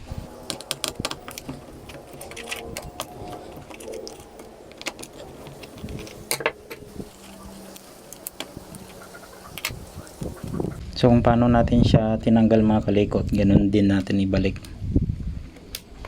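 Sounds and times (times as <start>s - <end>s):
cord being handled: 0.3s - 9.0s.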